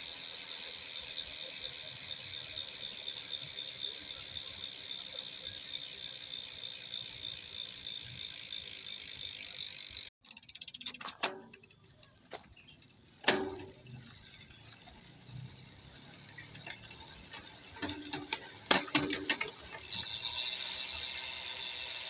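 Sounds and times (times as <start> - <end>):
bicycle hub freewheeling buzz: 0.0 - 12.0, 12.6 - 22.0.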